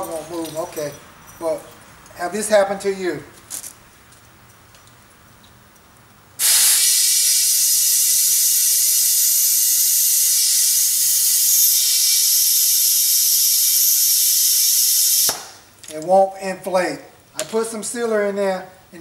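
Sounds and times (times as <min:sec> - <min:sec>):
compressed air hissing: 0:06.4 - 0:15.6.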